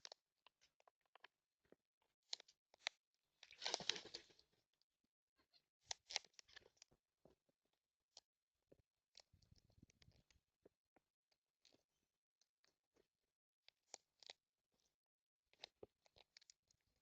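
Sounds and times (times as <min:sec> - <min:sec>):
scratchy rustle: 0:03.5 - 0:04.4.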